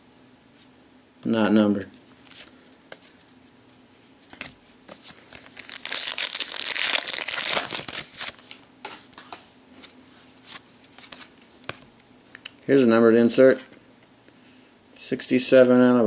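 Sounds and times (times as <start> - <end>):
plastic wrapper crinkling: 5.0 - 8.6.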